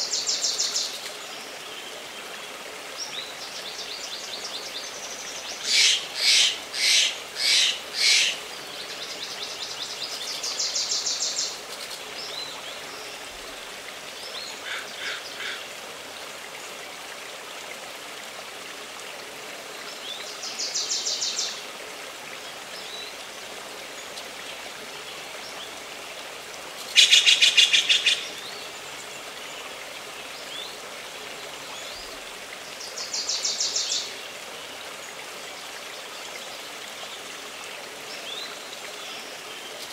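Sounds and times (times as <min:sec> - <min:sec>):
flowing stream water: 0:00.0 - 0:39.9
songbirds singing: 0:03.0 - 0:13.6, 0:26.7 - 0:34.3.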